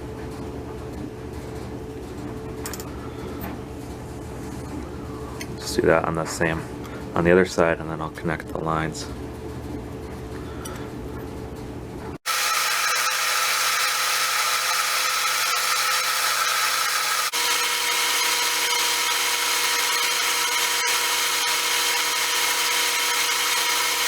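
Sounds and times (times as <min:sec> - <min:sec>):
power tool whine: 0:12.2 - 0:24.0.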